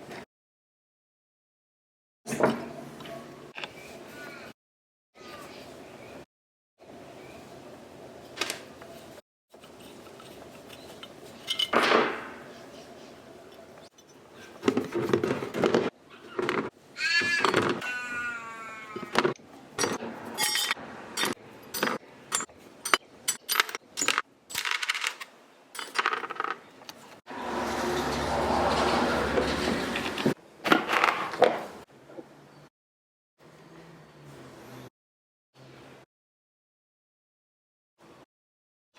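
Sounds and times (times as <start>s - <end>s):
metal clinks and scrapes: 9.6s - 11.8s, 19.8s - 24.9s.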